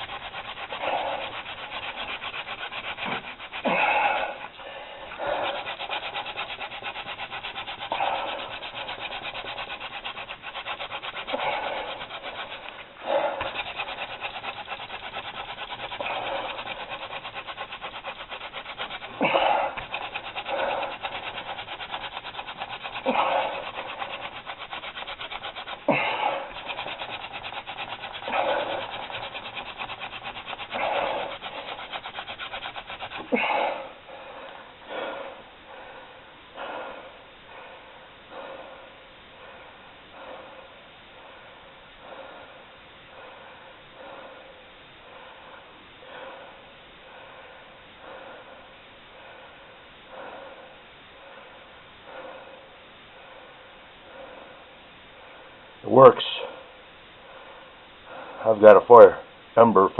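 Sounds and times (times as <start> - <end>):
hand drill rubbing whir: 0.0 - 33.5.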